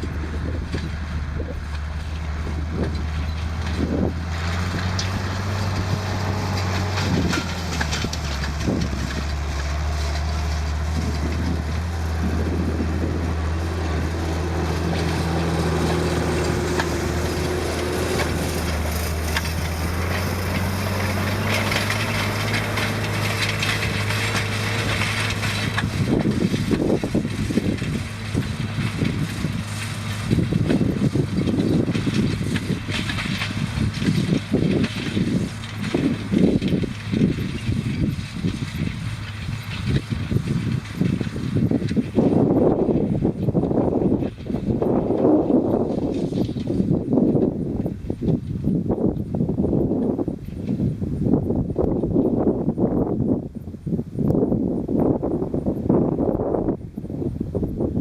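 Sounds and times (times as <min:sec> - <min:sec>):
tractor diesel engine running: 0:00.0 - 0:58.0
rattling: 0:00.6 - 0:42.4.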